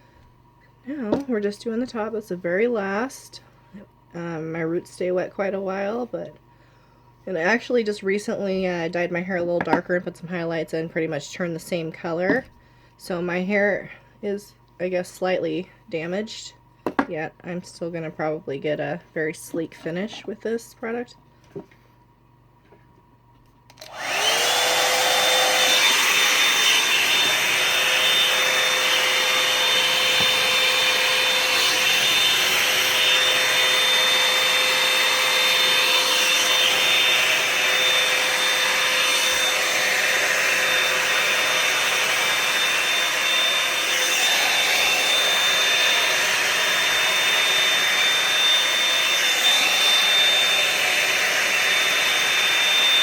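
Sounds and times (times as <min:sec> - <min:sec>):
hair dryer motor whine: 0:23.7 - 0:53.0.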